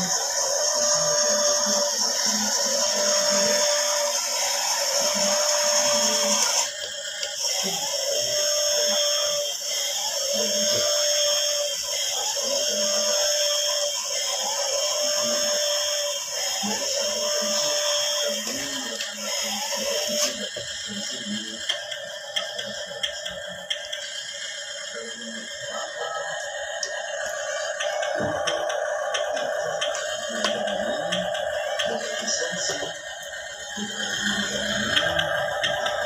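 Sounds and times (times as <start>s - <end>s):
toy truck motor whine: 0.0s - 36.0s.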